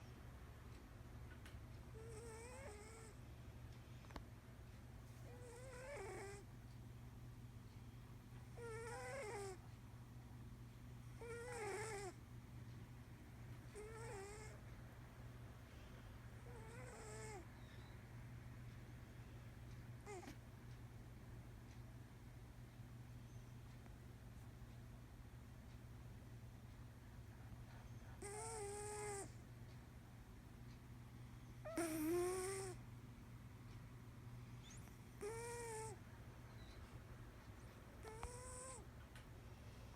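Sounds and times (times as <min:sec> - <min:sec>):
cat snoring: 0:02.0 - 0:03.2, 0:05.3 - 0:06.4, 0:08.6 - 0:09.6, 0:11.2 - 0:12.2, 0:13.7 - 0:14.6, 0:16.5 - 0:17.4, 0:20.0 - 0:20.3, 0:28.2 - 0:29.4, 0:31.6 - 0:32.8, 0:34.6 - 0:36.0, 0:38.0 - 0:38.8.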